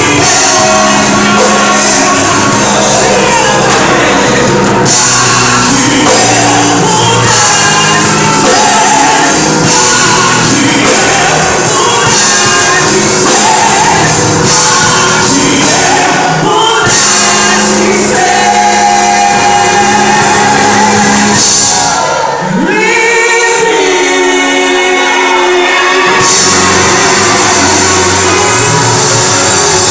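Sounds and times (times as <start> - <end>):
worship song singing over band: 0.0 - 29.9.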